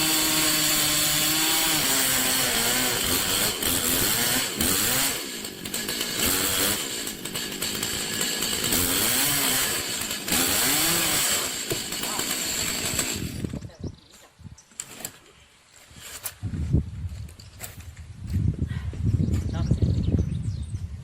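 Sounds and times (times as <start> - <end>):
chainsaw engine revving: 0.0 - 13.6.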